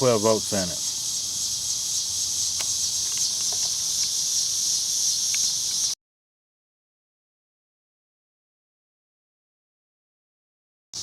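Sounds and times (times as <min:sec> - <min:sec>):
insects chorus: 0:00.0 - 0:06.0.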